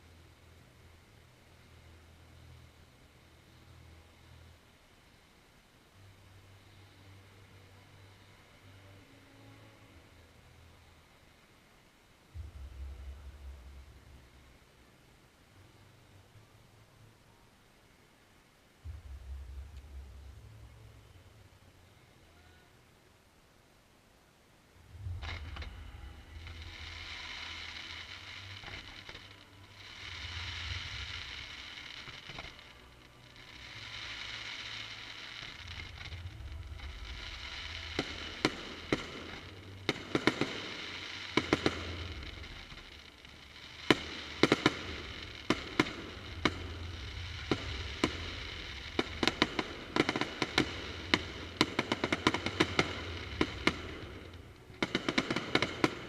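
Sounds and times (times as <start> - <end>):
fireworks crackling pops and bangs: 24.8 - 56.0
fireworks hissing: 24.8 - 56.0.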